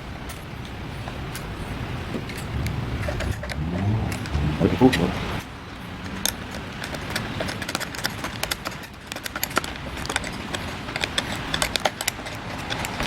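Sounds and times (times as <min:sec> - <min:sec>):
clicks and taps of hand tools: 0:06.0 - 0:13.0.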